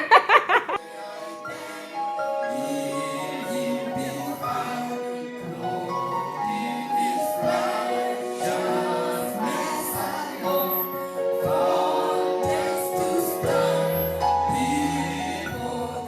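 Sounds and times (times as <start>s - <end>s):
choir singing gospel: 0.0s - 16.0s.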